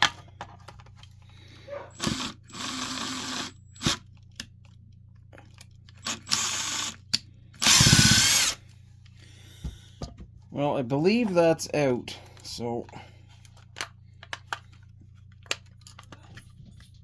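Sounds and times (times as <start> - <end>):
power drill whirring in bursts: 1.9 - 4.0, 6.0 - 6.9, 7.6 - 8.6.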